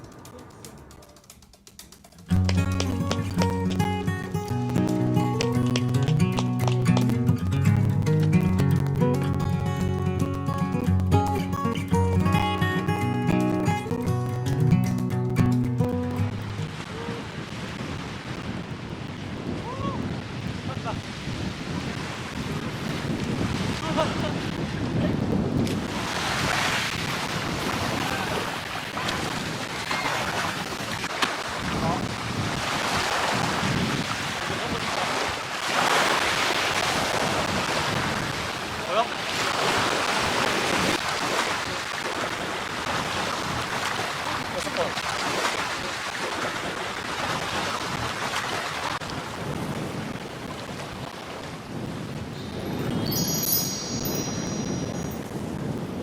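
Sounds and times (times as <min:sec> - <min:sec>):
water rushing: 0:02.3 - 0:12.6, 0:15.7 - 0:20.3, 0:25.7 - 0:51.6
wind buffeting microphone: 0:16.2 - 0:56.0.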